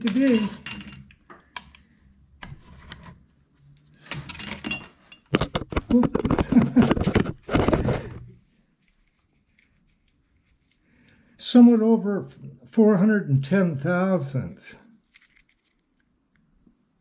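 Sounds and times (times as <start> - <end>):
metal scraping and rattling: 0.0 - 1.2
metal tools clinking: 0.0 - 1.8, 4.0 - 5.9.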